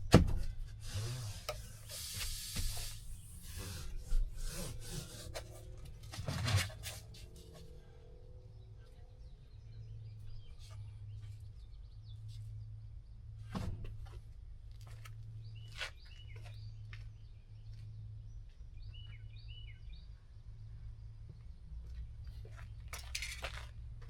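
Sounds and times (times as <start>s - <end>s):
bird chirping: 18.4s - 20.3s.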